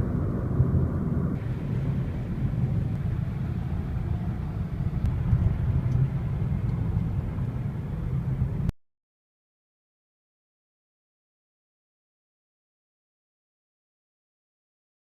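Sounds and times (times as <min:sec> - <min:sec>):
car road and engine rumble: 0:00.0 - 0:08.7.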